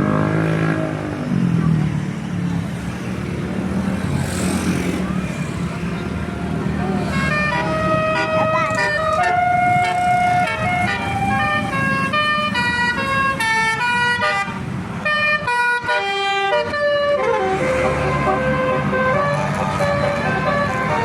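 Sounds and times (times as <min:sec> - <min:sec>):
bus engine rumble: 0:00.0 - 0:21.0
bus horn playing tune: 0:07.1 - 0:21.0.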